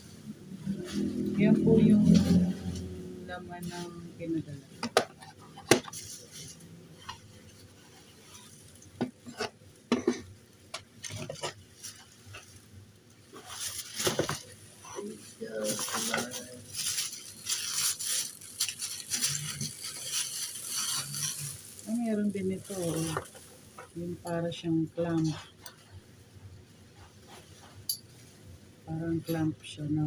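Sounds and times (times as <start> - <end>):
plastic packaging crinkling: 5.2 - 9.5, 10.9 - 12.6, 13.3 - 23.7.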